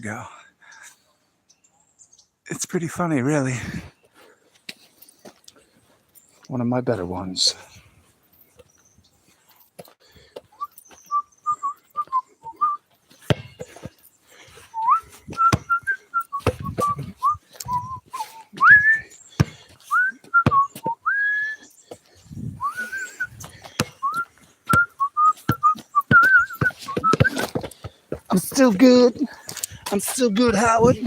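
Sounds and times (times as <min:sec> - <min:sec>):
person whistling a tune: 0:10.5 - 0:12.8, 0:14.7 - 0:19.2, 0:19.9 - 0:21.7, 0:22.6 - 0:23.4, 0:24.0 - 0:27.6.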